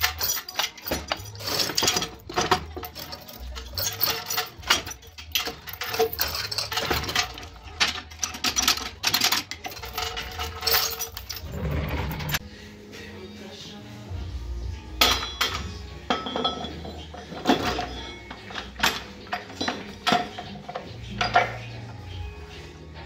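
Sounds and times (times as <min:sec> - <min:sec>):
metal parts and tools clinking: 0:00.0 - 0:12.4, 0:15.0 - 0:23.0.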